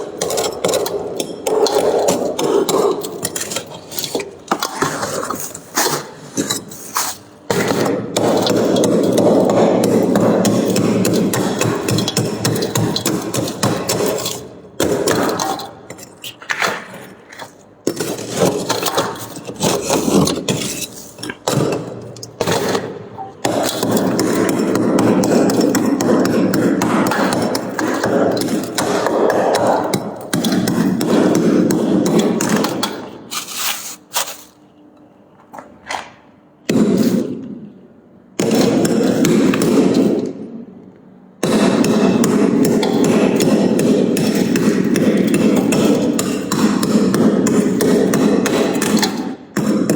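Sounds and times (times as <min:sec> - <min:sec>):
ice crunching and scraping: 0:01.6 - 0:07.3, 0:15.2 - 0:21.7, 0:33.3 - 0:34.6.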